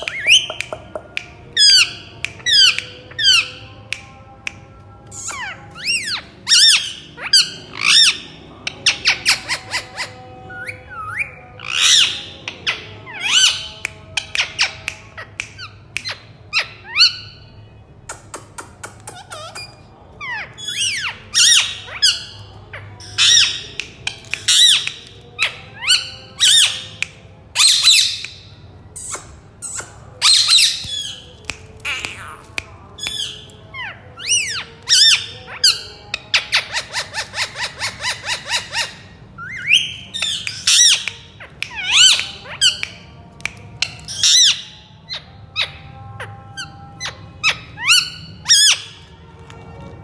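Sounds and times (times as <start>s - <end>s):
parakeets squawking: 19.1s - 26.9s, 29.6s - 42.9s.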